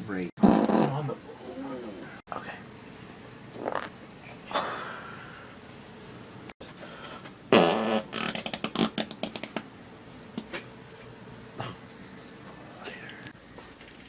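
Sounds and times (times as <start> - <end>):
loud fart: 0.4 - 1.2, 3.6 - 4.7, 7.5 - 9.4.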